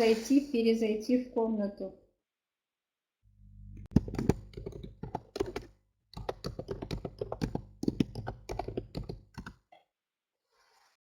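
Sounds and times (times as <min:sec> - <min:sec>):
typing on keyboard: 0:03.9 - 0:09.6.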